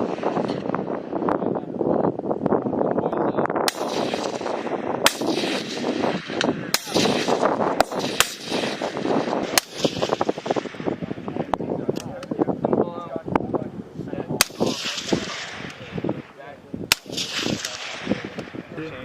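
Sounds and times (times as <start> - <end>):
sharp gunshots: 0.0 - 1.2, 3.7 - 11.5, 14.4 - 18.8
steady rough rushing noise: 3.7 - 11.9.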